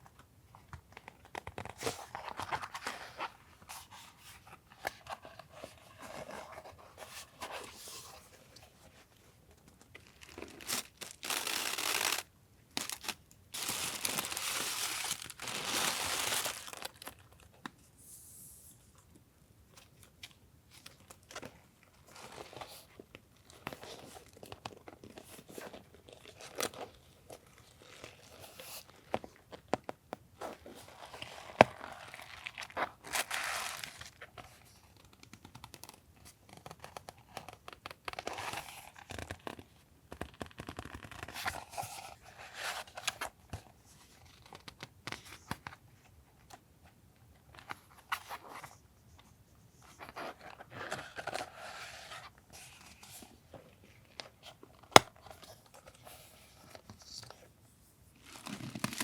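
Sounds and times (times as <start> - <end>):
packaging rustling and crinkling: 9.0 - 17.5, 31.1 - 34.2, 58.2 - 59.0.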